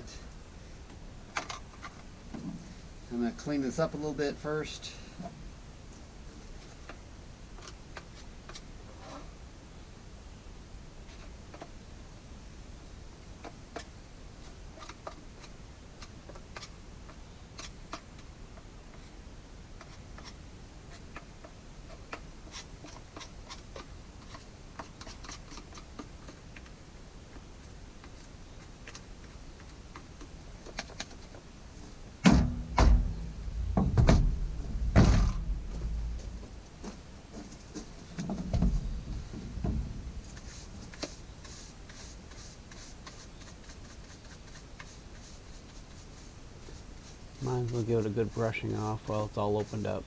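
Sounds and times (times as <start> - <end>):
light clicks and scratching: 13.4 - 19.2, 19.8 - 50.0
dull knocks: 32.2 - 36.6, 38.1 - 40.3
light scrapes and clicks: 40.1 - 48.5.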